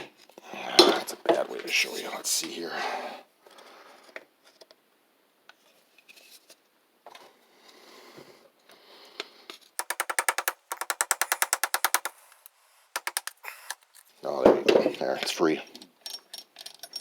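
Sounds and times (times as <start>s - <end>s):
ratchet clicking: 9.8s - 14.0s
hand handling noises: 9.8s - 14.1s.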